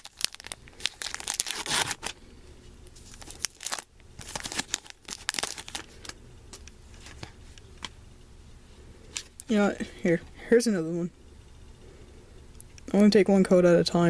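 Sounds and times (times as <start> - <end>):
foil wrapper tearing and crinkling: 0.0 - 2.2, 3.0 - 7.3.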